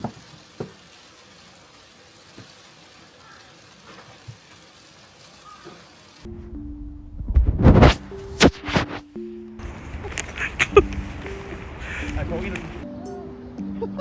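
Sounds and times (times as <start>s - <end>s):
steady rain falling: 0.0s - 6.3s, 9.6s - 12.9s.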